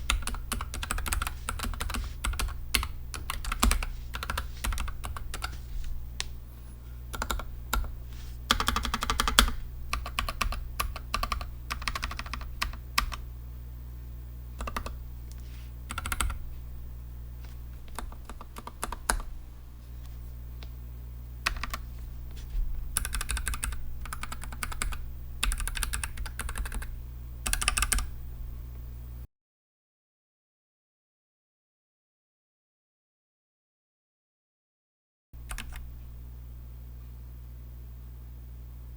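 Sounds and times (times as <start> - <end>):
mechanical keyboard typing: 0.0 - 5.5, 7.1 - 7.9, 8.5 - 13.2, 14.6 - 15.0, 15.9 - 16.4, 17.9 - 19.3, 21.4 - 21.8, 23.0 - 28.1, 35.5 - 35.8.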